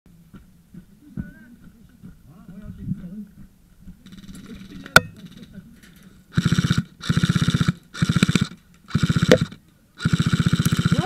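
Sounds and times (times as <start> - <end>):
airsoft gun full-auto bursts: 6.3 - 11.0.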